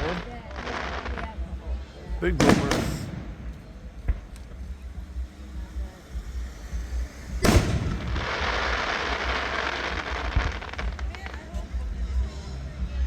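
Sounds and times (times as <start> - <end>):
firework crackling: 0.0 - 13.0
firework boom: 2.4 - 5.0, 6.3 - 9.4.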